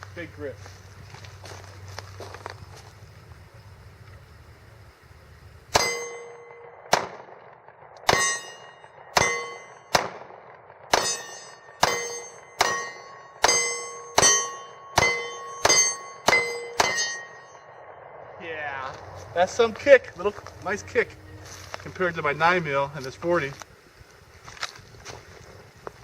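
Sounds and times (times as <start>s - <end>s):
pistol shots: 5.7s - 18.4s
short metallic ring: 5.8s - 6.7s, 8.1s - 9.9s, 11.0s - 17.7s.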